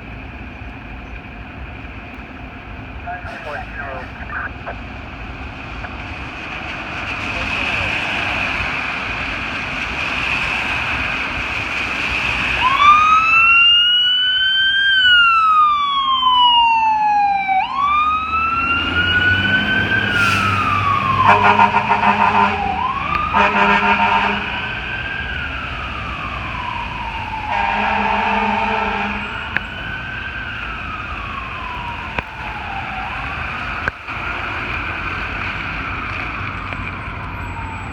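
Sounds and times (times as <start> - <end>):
fire engine siren wailing: 1.7 - 37.9
air horn blasts: 21.2 - 24.8, 27.5 - 29.6.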